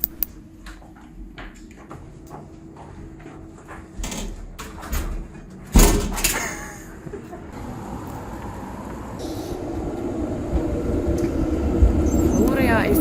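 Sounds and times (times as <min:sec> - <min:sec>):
door banging shut: 0:04.0 - 0:06.7
street traffic hum: 0:04.0 - 0:13.0.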